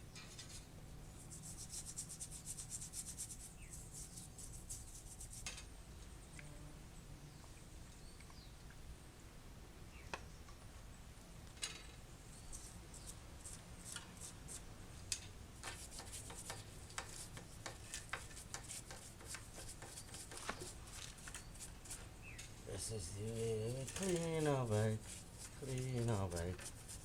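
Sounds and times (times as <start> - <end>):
toothbrush scrubbing chain: 23.0 - 27.0.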